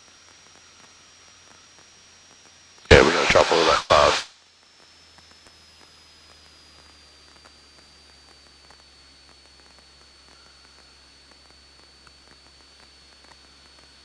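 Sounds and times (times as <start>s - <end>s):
intercom hum and hiss: 2.9s - 4.3s.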